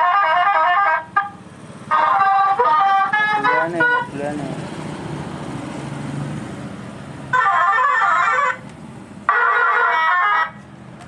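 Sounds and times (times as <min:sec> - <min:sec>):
wavering multi-tone horn tune: 0:00.0 - 0:04.5, 0:07.3 - 0:08.6, 0:09.3 - 0:10.6.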